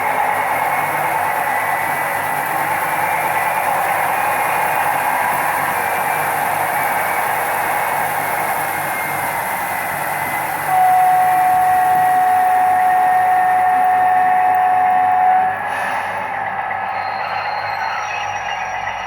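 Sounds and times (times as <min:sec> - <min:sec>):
diesel locomotive engine running: 0:00.0 - 0:19.0
locomotive horn: 0:10.7 - 0:15.7.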